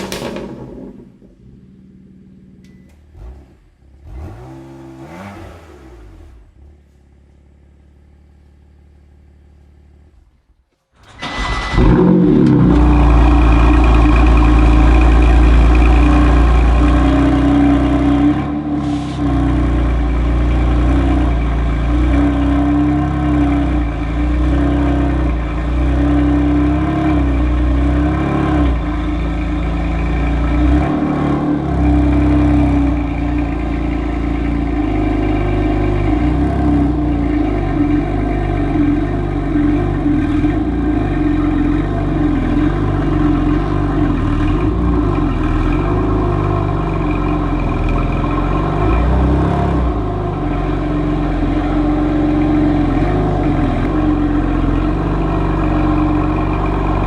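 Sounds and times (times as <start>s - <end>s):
car engine revving: 0.0s - 57.0s
engine running loud and steady: 11.3s - 25.9s, 26.8s - 57.0s.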